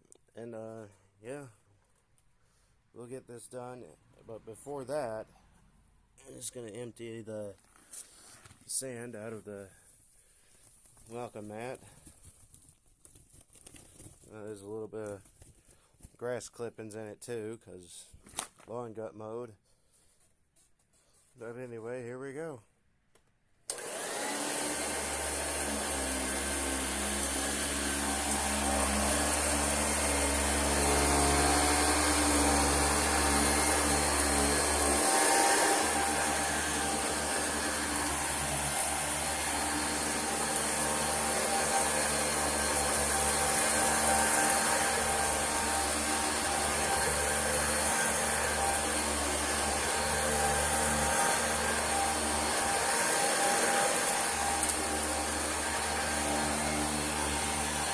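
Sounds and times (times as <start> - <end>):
vacuum cleaner running: 23.7 - 57.9.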